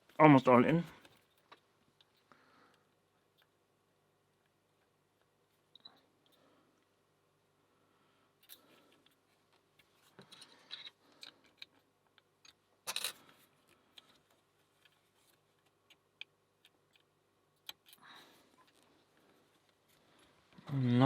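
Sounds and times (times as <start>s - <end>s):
lock pick clicks and scrapes: 12.4s - 13.3s.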